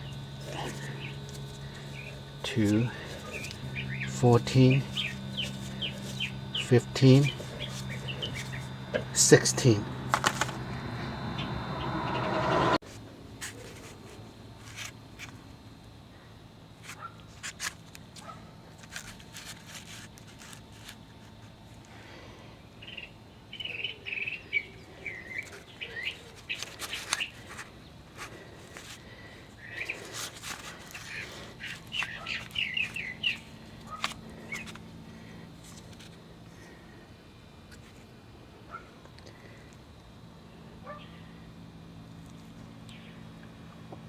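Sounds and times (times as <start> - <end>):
birds chirping: 0.0 - 12.8, 22.8 - 28.5, 29.1 - 35.5.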